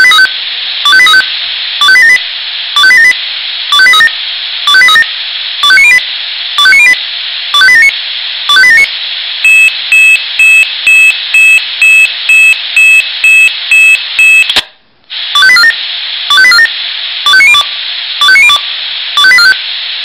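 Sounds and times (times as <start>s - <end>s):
steady hiss: 0.3s - 20.0s
pager quick beeps: 9.5s - 14.6s.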